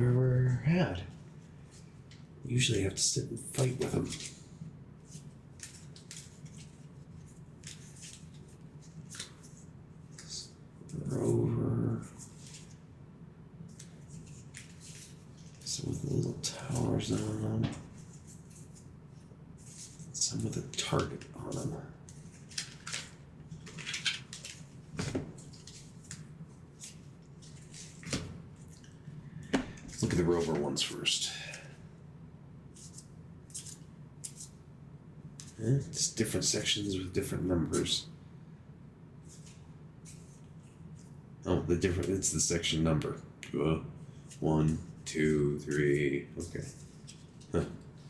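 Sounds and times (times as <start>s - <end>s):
cards rustling and clicking: 3.6s - 4.4s, 5.1s - 10.4s, 13.8s - 18.9s, 19.6s - 30.6s, 32.8s - 34.6s
cards tapping on table: 29.5s - 30.0s.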